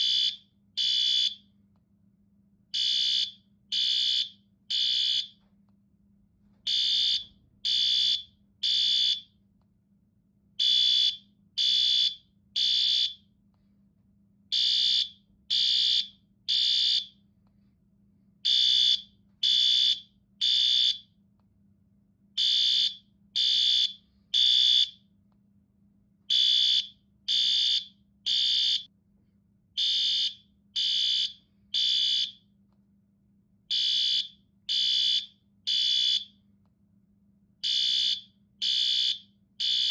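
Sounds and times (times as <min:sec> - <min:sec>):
fire alarm high-pitched beeps: 0:00.0 - 0:01.5, 0:02.8 - 0:05.4, 0:06.7 - 0:09.3, 0:10.6 - 0:13.2, 0:14.5 - 0:17.2, 0:18.5 - 0:21.1, 0:22.4 - 0:25.0, 0:26.3 - 0:28.9, 0:29.8 - 0:32.4, 0:33.7 - 0:36.4, 0:37.6 - 0:39.9.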